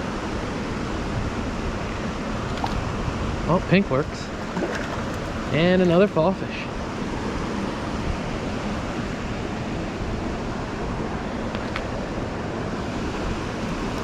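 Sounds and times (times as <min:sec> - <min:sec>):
water rushing over spillway: 0:02.3 - 0:06.1.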